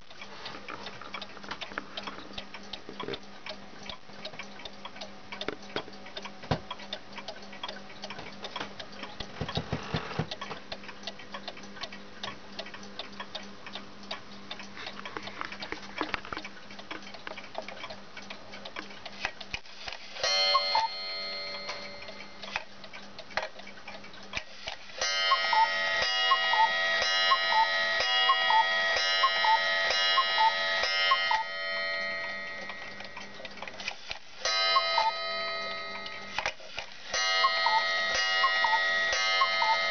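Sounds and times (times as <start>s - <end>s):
clock ticking: 0.0s - 39.9s
clock chime striking: 20.2s - 22.4s, 25.0s - 33.4s, 34.4s - 36.4s, 37.1s - 39.9s
cuckoo clock calls: 20.2s - 22.6s, 25.0s - 33.6s, 34.4s - 39.9s.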